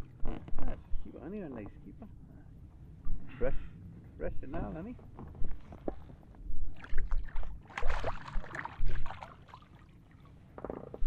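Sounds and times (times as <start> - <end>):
wind rumble on microphone: 0.0 - 9.2
water splashing against boat: 6.8 - 11.0.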